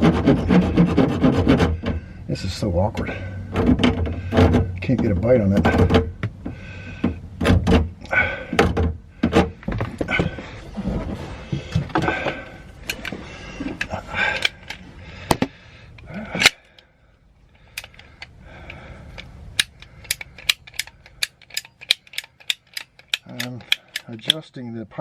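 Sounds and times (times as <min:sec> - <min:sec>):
handling knocks and clatter: 0:02.9 - 0:16.5
pipe cutter ratchet clicks: 0:17.7 - 0:24.4.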